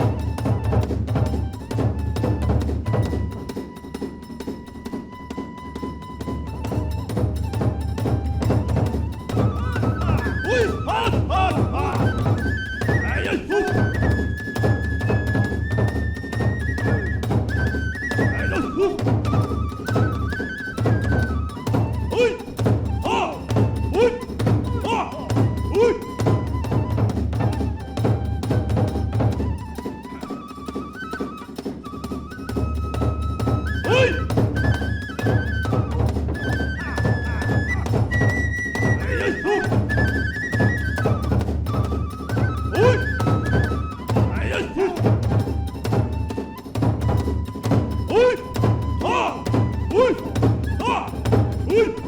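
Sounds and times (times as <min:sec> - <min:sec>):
rapid drum beats: 0:00.0 - 0:05.2, 0:06.3 - 0:30.0, 0:30.8 - 0:52.0
bamboo flute melody: 0:00.0 - 0:52.0
big drum beat: 0:08.4 - 0:14.0, 0:35.5 - 0:41.3, 0:42.8 - 0:45.4.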